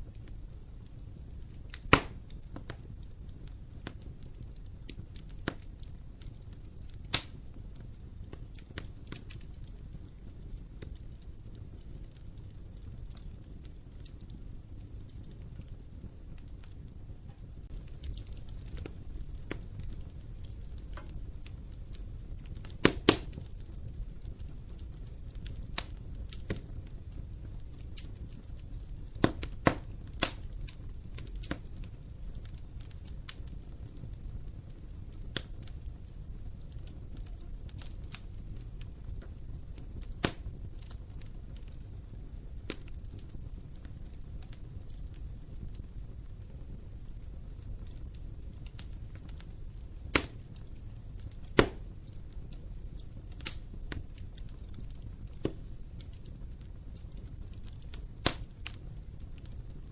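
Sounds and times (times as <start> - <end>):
fire crackling and popping: 0.0 - 59.9
fire rumbling: 0.0 - 59.9.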